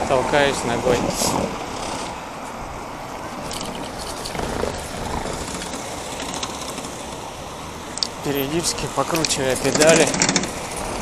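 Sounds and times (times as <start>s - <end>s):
wind noise: 0.0s - 7.3s
bicycle rolling on road: 0.0s - 11.0s.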